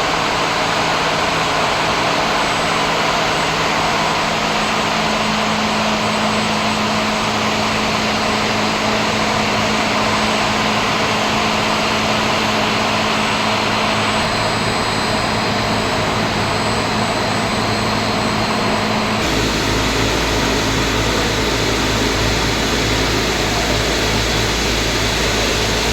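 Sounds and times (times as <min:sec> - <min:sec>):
deeper machine hum: 0:00.0 - 0:25.9
rushing machine hum: 0:00.0 - 0:25.9.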